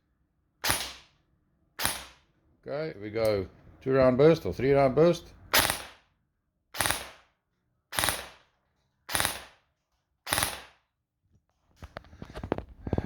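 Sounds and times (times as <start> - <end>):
airsoft gun firing bursts: 0.6 - 1.1, 1.8 - 2.2, 5.5 - 6.1, 6.8 - 7.3, 7.9 - 8.5, 9.1 - 9.6, 10.2 - 10.8.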